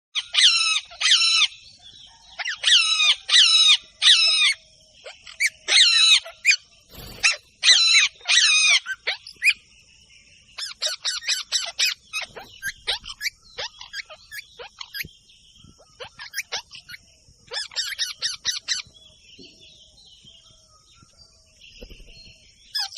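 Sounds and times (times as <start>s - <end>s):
parrots squawking: 0.2s - 1.6s, 2.4s - 9.6s, 10.6s - 15.1s, 15.8s - 18.8s.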